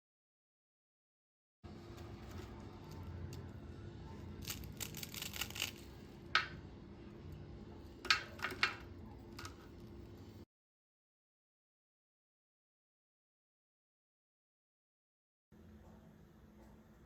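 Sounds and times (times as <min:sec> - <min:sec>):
low steady hum: 0:01.7 - 0:10.4.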